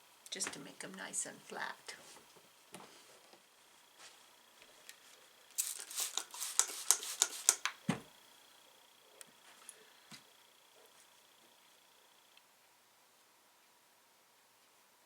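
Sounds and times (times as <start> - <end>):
sharp clicks: 5.6 - 7.8.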